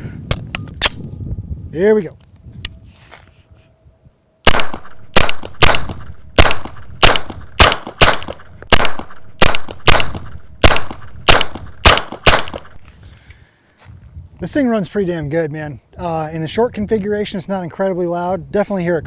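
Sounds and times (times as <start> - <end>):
suppressed gunshots: 4.5 - 12.8.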